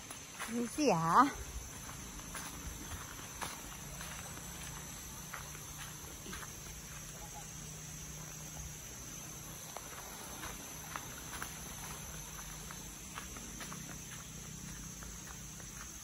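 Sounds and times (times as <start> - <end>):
insects droning: 0.0 - 16.0.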